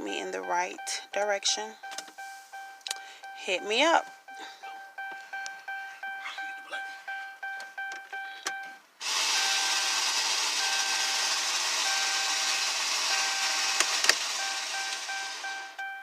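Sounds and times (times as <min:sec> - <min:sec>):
vehicle warning chime: 0:00.0 - 0:16.0.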